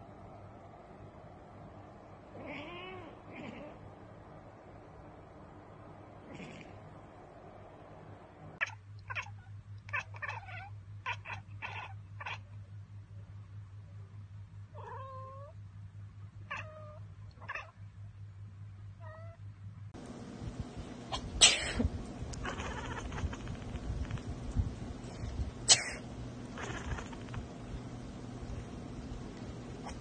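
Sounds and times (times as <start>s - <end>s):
cat chattering: 2.3s - 3.8s, 6.2s - 6.8s, 8.6s - 12.6s, 21.0s - 24.5s, 25.1s - 27.8s, 29.6s - 30.0s
cat chirping: 2.3s - 3.8s, 8.6s - 12.5s, 16.5s - 17.8s, 22.3s - 24.4s, 25.1s - 27.5s, 29.7s - 30.0s.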